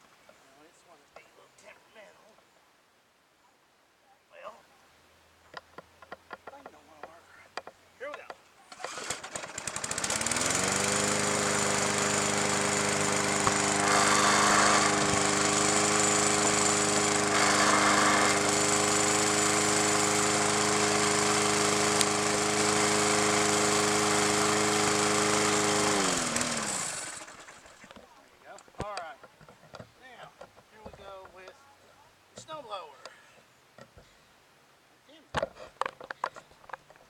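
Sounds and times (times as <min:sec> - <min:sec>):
lawn mower engine running: 0:08.7 - 0:28.0.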